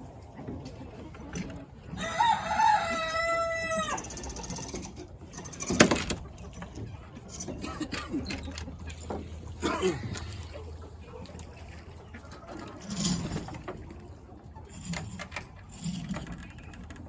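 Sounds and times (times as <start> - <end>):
rooster crowing: 2.0 - 4.2.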